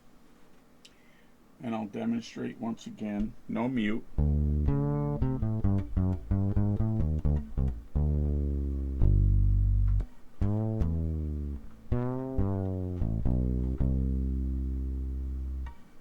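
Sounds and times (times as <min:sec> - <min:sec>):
fretless bass plucked notes: 0:04.0 - 0:15.9.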